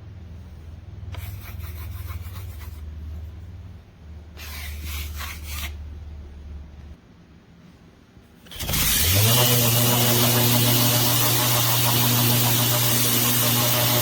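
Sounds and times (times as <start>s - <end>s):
sanding disc rubbing surface: 4.4s - 5.8s, 8.8s - 14.0s
orbital sander humming: 8.5s - 14.0s.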